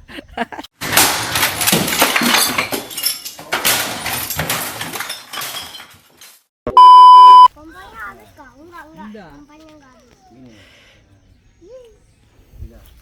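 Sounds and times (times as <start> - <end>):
rustling and clattering: 0.8 - 6.5
electronic beep: 6.7 - 7.5.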